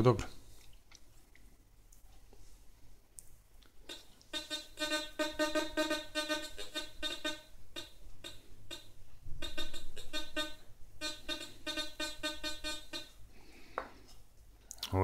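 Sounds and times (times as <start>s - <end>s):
metal detector buzzy tones: 3.9s - 13.2s.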